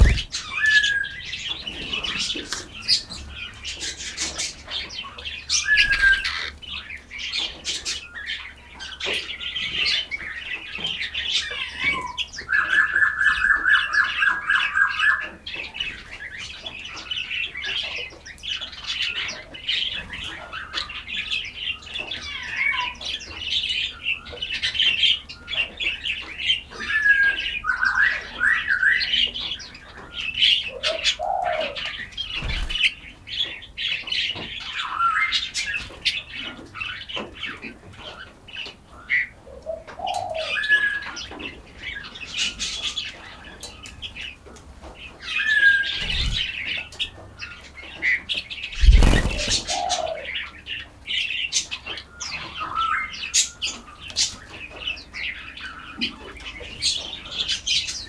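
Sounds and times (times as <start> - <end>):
bird trill: 0.0 - 1.1, 48.7 - 50.2
falling bird calls: 0.0 - 8.5, 29.3 - 36.3, 39.7 - 58.0
birds chirping: 0.0 - 37.6, 39.8 - 58.0.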